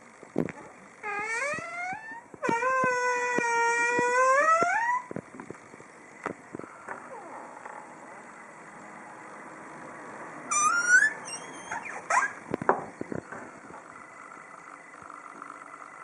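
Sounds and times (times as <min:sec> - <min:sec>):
door hinge creaking and squeaking: 0:01.0 - 0:05.3, 0:06.8 - 0:07.8, 0:10.5 - 0:14.4.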